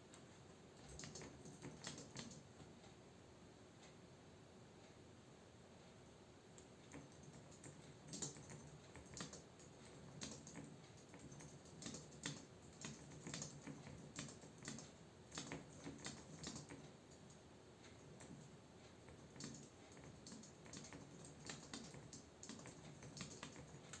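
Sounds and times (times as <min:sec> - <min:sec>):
keyboard typing clicks: 0:00.8 - 0:02.5, 0:06.6 - 0:17.4, 0:19.1 - 0:24.0.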